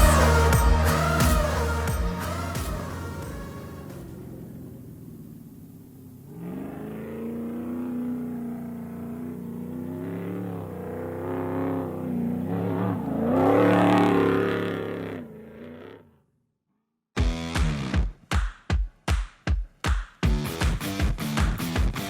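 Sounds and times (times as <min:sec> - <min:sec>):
race vehicle engine revving: 0:00.0 - 0:16.1.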